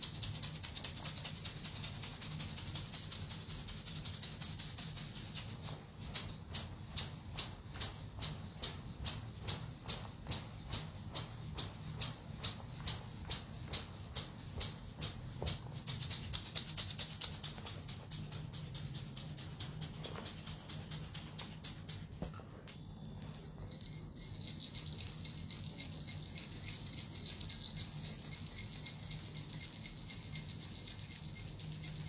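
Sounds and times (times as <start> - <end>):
hand rattle shaking: 0.0 - 7.4, 9.5 - 32.0.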